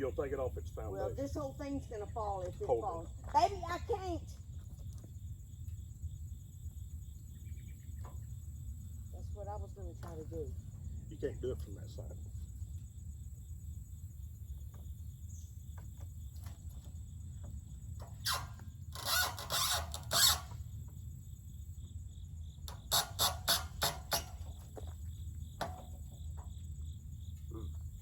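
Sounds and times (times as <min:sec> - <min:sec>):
insects buzzing: 0:00.0 - 0:28.0
short loud squeals: 0:18.1 - 0:20.7, 0:22.8 - 0:24.6.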